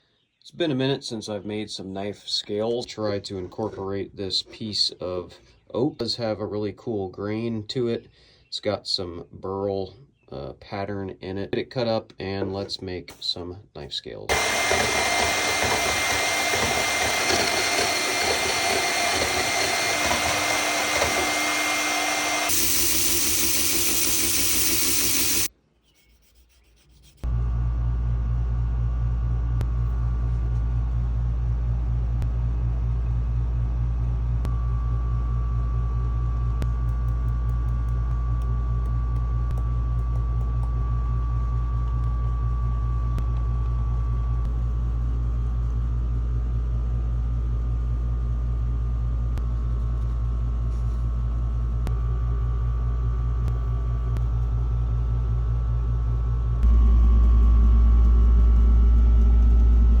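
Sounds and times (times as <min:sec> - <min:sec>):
power tool cutting wood: 0:14.3 - 0:25.5
sanding tool: 0:14.3 - 0:25.5
machine humming with faint whine: 0:27.3 - 1:00.0.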